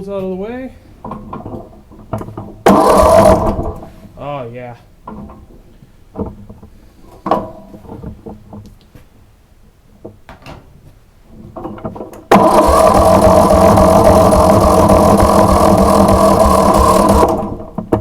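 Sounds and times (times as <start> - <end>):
electric starter cranking engine: 2.6 - 3.9, 12.3 - 17.9.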